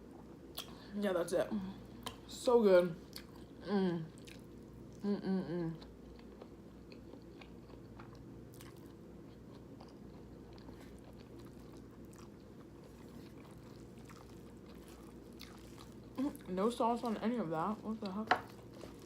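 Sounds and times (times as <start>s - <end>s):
person humming mmm: 3.6s - 4.1s, 5.0s - 5.9s
person chewing: 4.2s - 5.0s, 5.6s - 16.5s, 18.5s - 19.0s.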